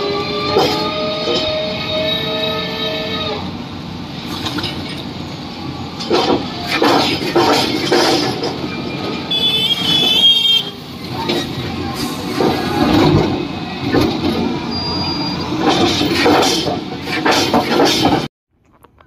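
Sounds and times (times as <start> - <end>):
heavy construction machinery running: 3.4 - 18.3
voices: 9.8 - 15.0.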